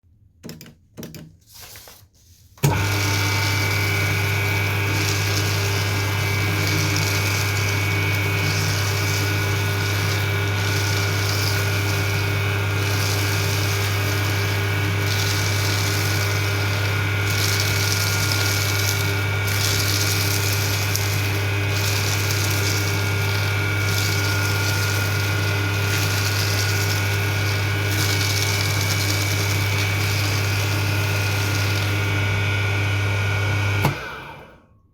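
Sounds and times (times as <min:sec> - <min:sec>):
paper being shredded: 0:01.5 - 0:34.0
shredder motor humming: 0:02.6 - 0:34.8.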